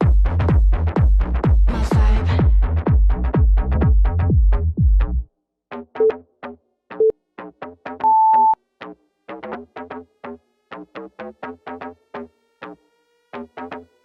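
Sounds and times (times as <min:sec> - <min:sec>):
electronic dance music: 0:00.0 - 0:03.5
short steady beep: 0:08.0 - 0:08.6.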